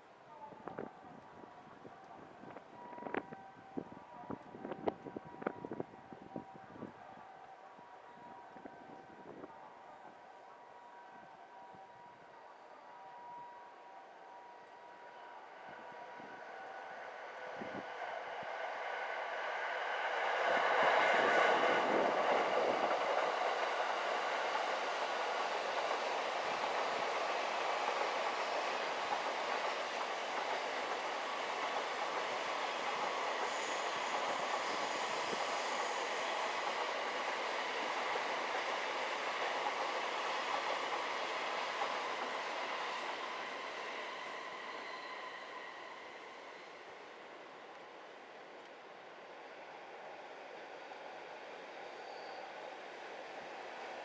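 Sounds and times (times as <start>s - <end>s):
train passing: 0.0s - 54.0s.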